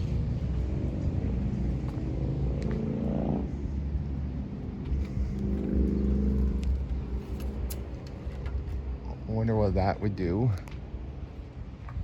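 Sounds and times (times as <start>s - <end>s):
motor vehicle engine accelerating: 0.0s - 7.6s
steady low rumble: 0.0s - 12.0s.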